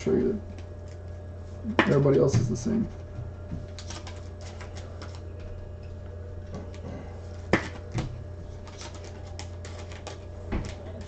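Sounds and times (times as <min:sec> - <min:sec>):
steady low hum: 0:00.0 - 0:11.0
cards handled on table: 0:01.7 - 0:05.6.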